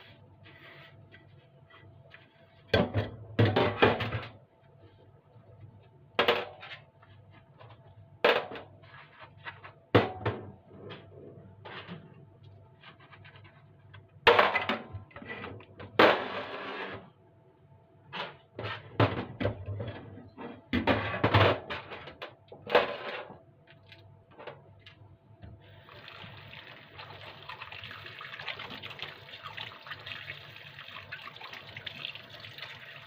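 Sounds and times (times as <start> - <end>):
faint steady hum: 21.8 - 33.0.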